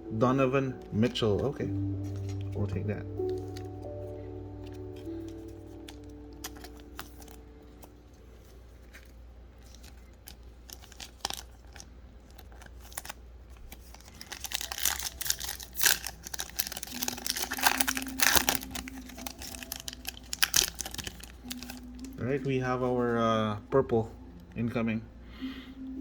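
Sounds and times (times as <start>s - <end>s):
plastic crinkling: 0.8s - 23.1s
cards clicking and rustling: 3.2s - 3.7s, 4.6s - 22.2s.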